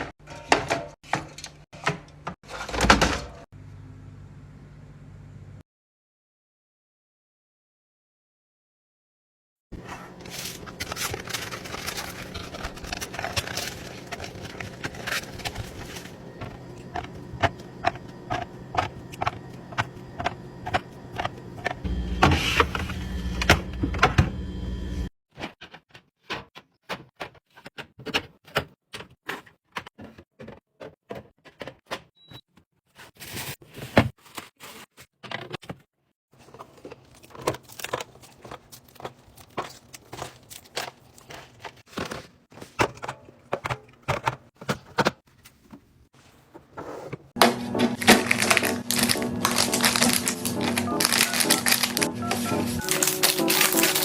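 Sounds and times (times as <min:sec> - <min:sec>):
fridge hum: 0:09.8 - 0:25.1, 0:46.5 - 0:54.0
containers clicking and knocking: 0:47.4 - 0:54.0.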